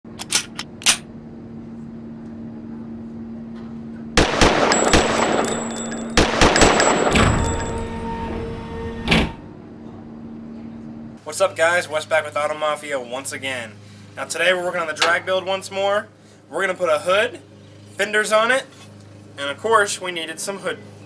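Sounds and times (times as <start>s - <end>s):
steady hum: 0.1s - 16.5s
sharp bangs and crashing bursts: 4.2s - 8.2s.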